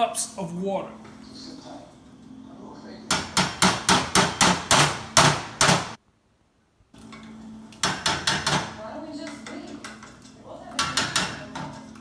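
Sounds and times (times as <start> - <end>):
metal utensil clanking against pot: 9.2 - 12.0.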